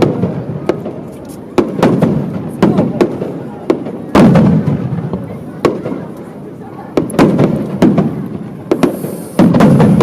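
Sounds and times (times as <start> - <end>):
firework shell bursts: 8.7 - 10.0.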